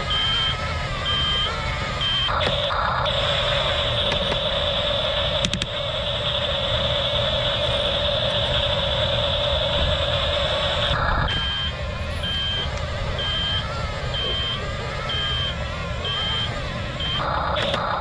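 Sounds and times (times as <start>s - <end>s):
even whine: 0.0s - 18.0s
motors and tracks whirring: 0.0s - 18.0s
reversing beep: 0.0s - 18.0s.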